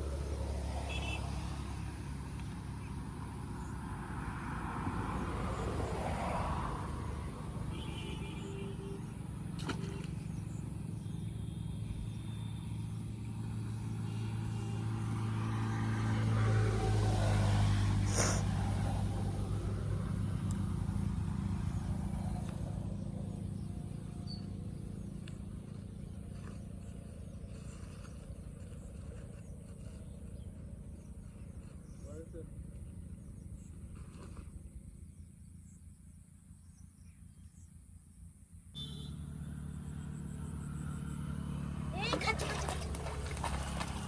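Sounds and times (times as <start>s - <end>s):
motor engine humming: 41.6s - 44.0s.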